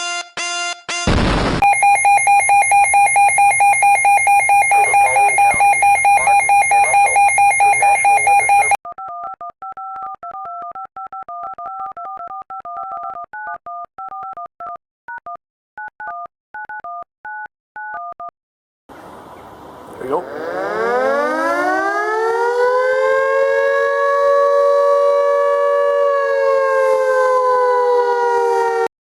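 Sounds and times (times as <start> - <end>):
electronic alert tone pulsing: 1.6 - 8.8
touch-tone beeps: 1.6 - 14.3.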